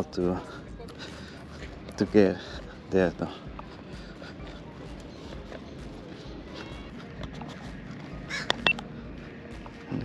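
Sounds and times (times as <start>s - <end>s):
footsteps walking: 3.5s - 10.0s.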